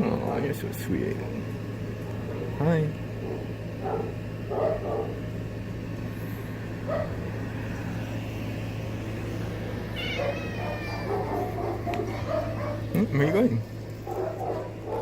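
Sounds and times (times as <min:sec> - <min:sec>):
steady low hum: 0:00.0 - 0:15.0
cats meowing: 0:09.4 - 0:13.0.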